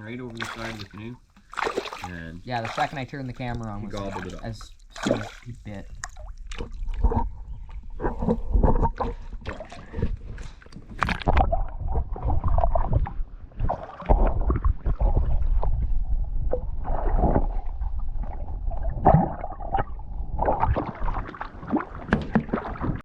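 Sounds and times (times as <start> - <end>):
water sloshing: 0.0 - 23.0
low rumble: 11.4 - 21.2
knocks in a canoe: 22.0 - 22.9.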